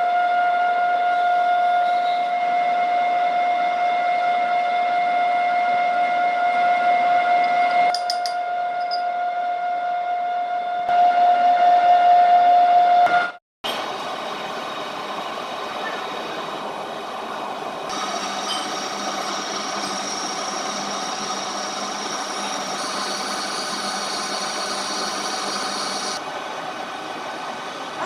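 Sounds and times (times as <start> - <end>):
noisy machine running: 13.7 - 28.0
machine tool whining: 17.9 - 26.2.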